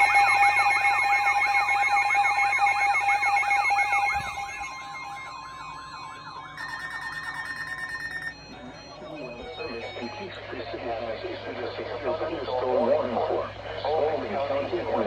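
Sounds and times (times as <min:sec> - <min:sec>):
steady alert tones: 0:00.0 - 0:10.3
electronic yelp siren: 0:00.0 - 0:11.1.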